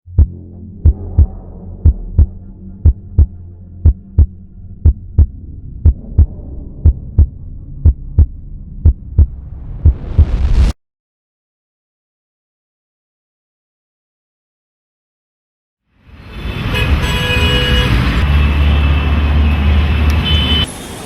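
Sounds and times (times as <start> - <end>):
heartbeat double thump: 0.1 - 10.8
low drone: 0.1 - 10.8
rising whoosh: 0.2 - 10.8.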